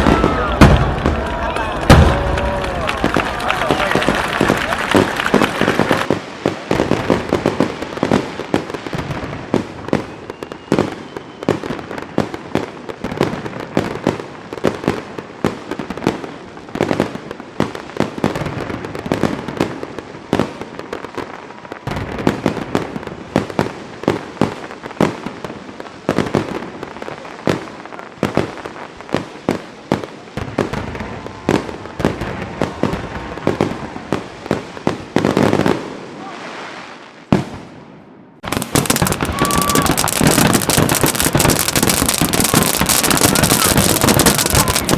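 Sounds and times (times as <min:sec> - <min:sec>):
continuous crackling: 0:00.0 - 0:06.1, 0:38.5 - 0:44.9
fireworks cracking and banging: 0:00.0 - 0:37.6, 0:38.4 - 0:44.9.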